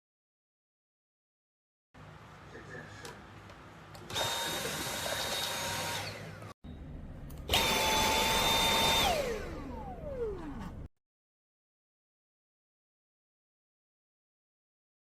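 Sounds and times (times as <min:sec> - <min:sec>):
vacuum cleaner motor whining: 0:04.1 - 0:06.5, 0:07.5 - 0:10.9.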